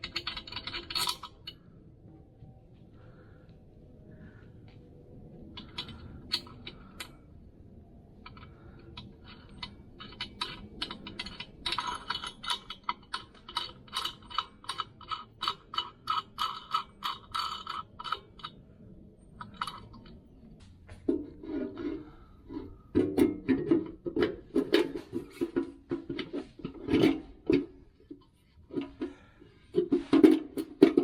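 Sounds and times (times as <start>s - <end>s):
hand tool clicking on metal: 0.0s - 1.6s, 8.3s - 18.6s.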